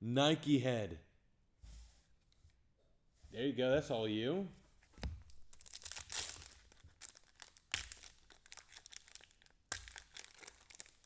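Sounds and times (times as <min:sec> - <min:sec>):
card wrappers crinkling: 0:05.2 - 0:11.0.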